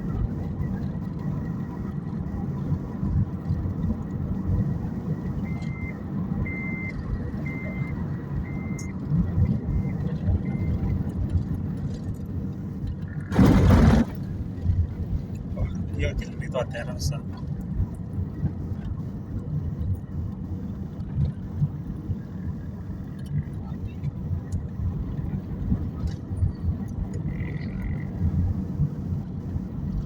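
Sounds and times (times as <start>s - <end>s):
vehicle engine rumbling: 0.0s - 30.0s
short electronic beeps: 5.4s - 9.0s, 9.6s - 11.0s
loud rush of noise: 13.3s - 14.3s.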